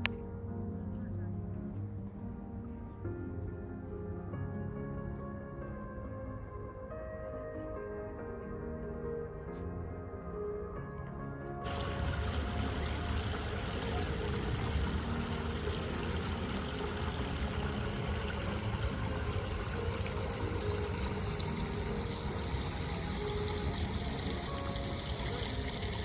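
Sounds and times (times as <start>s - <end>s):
running water: 11.6s - 26.0s.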